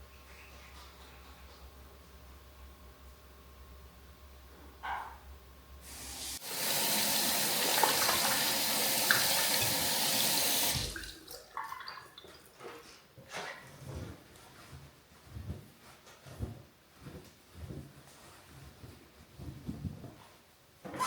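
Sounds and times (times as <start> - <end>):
tap water running into sink: 5.9 - 12.4.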